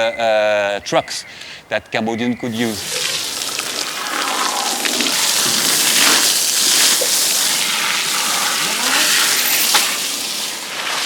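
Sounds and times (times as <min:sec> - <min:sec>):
water rushing and splashing: 0:02.6 - 0:11.0.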